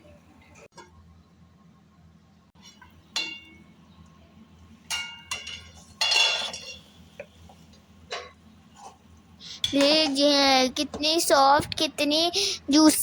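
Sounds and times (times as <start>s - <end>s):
metal utensil clinking on pan: 2.6s - 3.6s, 4.9s - 6.9s.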